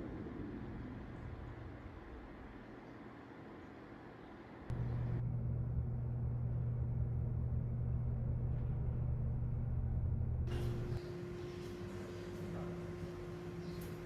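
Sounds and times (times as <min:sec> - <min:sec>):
low mechanical rumble: 0:00.0 - 0:14.0.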